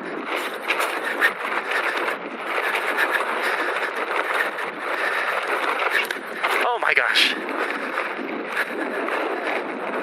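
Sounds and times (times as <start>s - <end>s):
bike clicking and rattling: 0.0s - 10.0s
bike tyres rolling over dirt: 0.0s - 10.0s.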